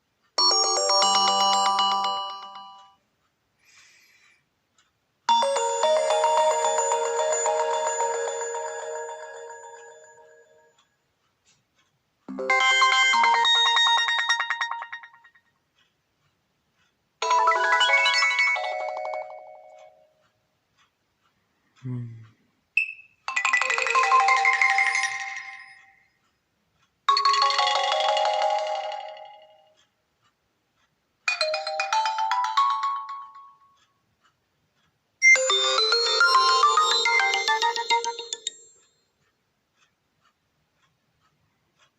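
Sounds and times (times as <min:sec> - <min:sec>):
chiming ringtone melody: 0:00.4 - 0:03.0, 0:05.3 - 0:10.8, 0:12.3 - 0:15.5, 0:17.2 - 0:20.2, 0:22.8 - 0:26.1, 0:27.1 - 0:29.8, 0:31.3 - 0:33.8, 0:35.2 - 0:38.8.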